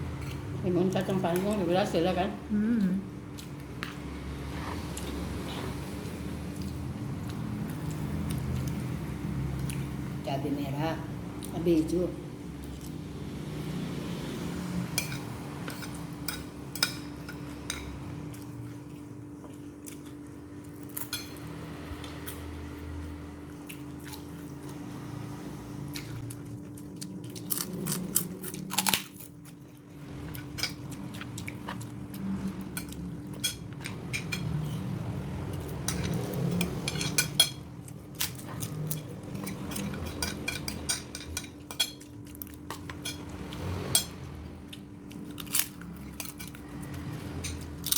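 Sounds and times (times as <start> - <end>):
steady low hum: 0.0 - 47.9
utensils and dishes clinking: 32.6 - 44.3, 45.2 - 47.9.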